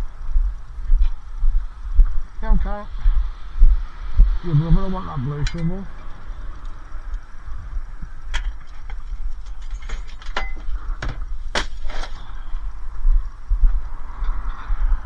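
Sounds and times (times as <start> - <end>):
low rumble: 0.0 - 11.6
scrap metal knocks and clatters: 8.4 - 12.3.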